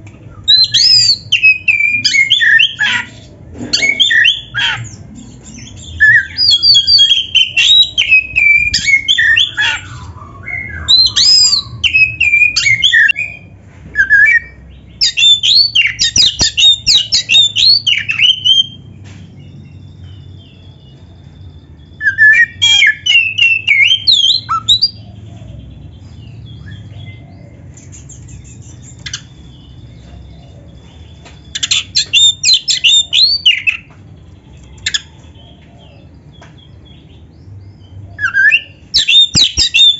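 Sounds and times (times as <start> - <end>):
bird singing whistled phrases: 3.8 - 18.8, 31.5 - 33.9, 38.2 - 39.9.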